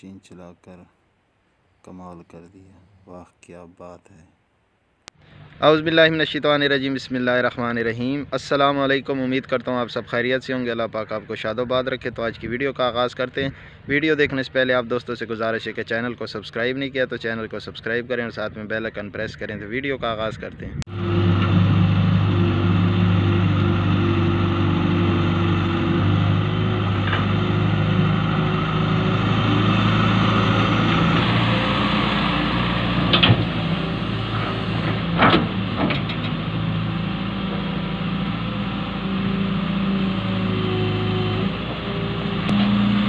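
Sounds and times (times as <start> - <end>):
excavator diesel engine running: 20.9 - 43.0.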